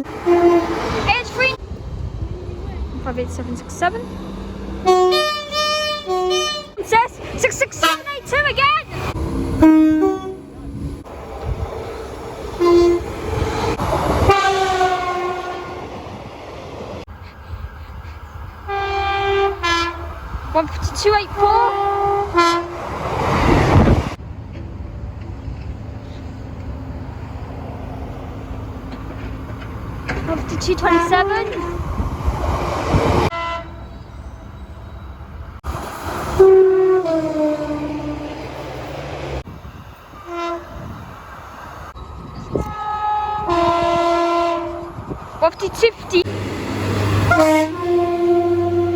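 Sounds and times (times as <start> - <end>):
train horn blasts: 0.0 - 1.6, 4.8 - 6.8, 7.6 - 10.9, 12.6 - 13.2, 14.2 - 16.0, 18.7 - 20.1, 21.3 - 22.8, 30.5 - 32.0, 33.3 - 34.1, 36.3 - 38.6, 40.1 - 41.0, 42.6 - 45.0, 47.2 - 48.9
train rumble: 0.0 - 48.9.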